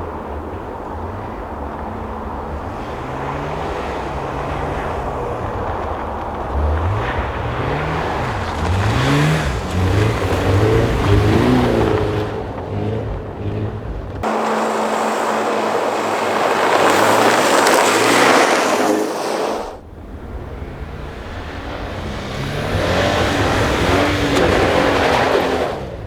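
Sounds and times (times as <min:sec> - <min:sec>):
rally car engines revving: 0:00.0 - 0:26.0
loud rushing noise: 0:14.2 - 0:19.8.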